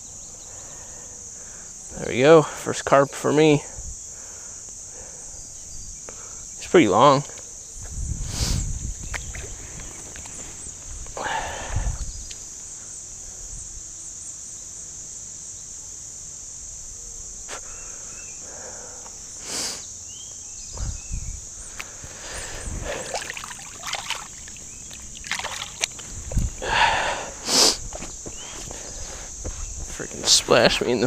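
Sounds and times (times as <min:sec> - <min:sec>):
insect chirring: 0:00.0 - 0:31.0
fish splashing in water: 0:22.8 - 0:26.0.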